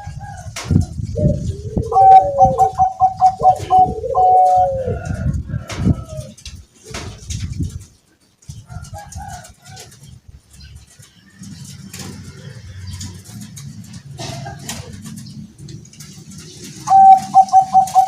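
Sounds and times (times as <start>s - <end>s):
dove cooing: 0.0s - 6.3s, 16.4s - 18.0s
wind rumbling on microphone: 0.0s - 18.0s.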